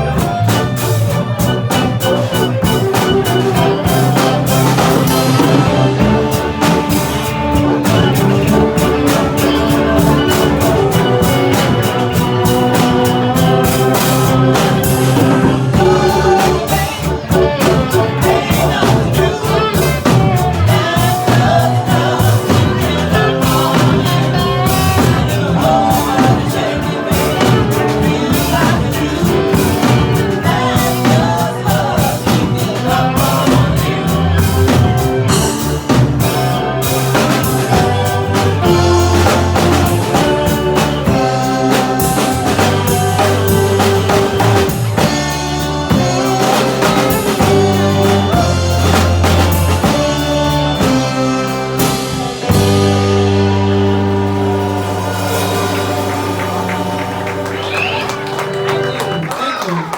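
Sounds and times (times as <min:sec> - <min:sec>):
drum kit beat: 0:00.0 - 0:59.9
live blues-rock band: 0:00.0 - 0:59.9
person singing: 0:00.0 - 0:59.9.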